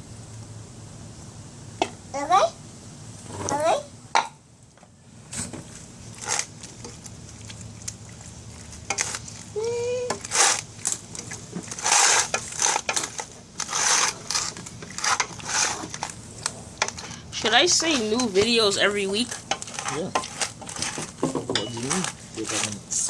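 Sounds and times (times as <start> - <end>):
repeated scraping strokes: 10.2 - 23.0
utensils and dishes clinking: 19.1 - 22.8.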